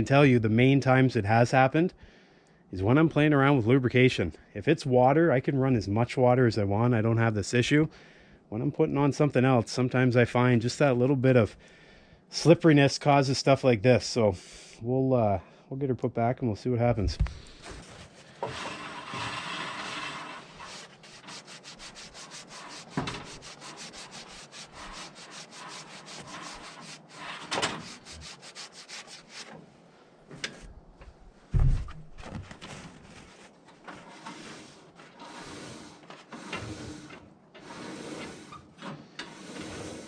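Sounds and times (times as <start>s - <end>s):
brushing and scraping sawdust: 17.6s - 29.6s, 32.9s - 38.6s, 39.2s - 40.0s
loud thud: 31.5s - 32.2s
knocks: 31.5s - 32.3s.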